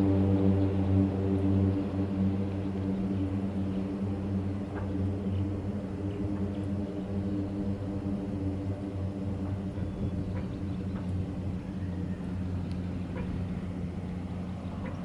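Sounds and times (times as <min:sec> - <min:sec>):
engine drone: 0:00.0 - 0:15.0
faint light clicks: 0:12.5 - 0:13.3.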